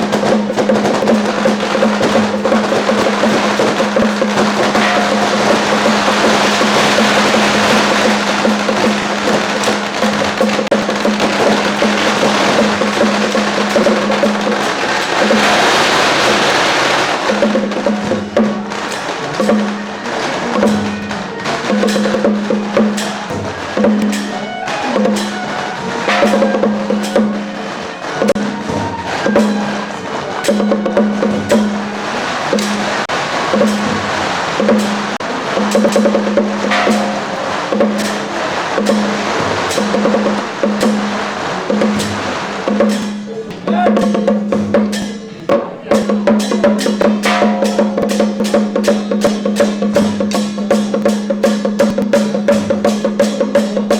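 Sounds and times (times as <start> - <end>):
drums: 0.0 - 53.9
hiss-like wash: 0.0 - 53.9
sharp clacking strikes: 0.0 - 53.9.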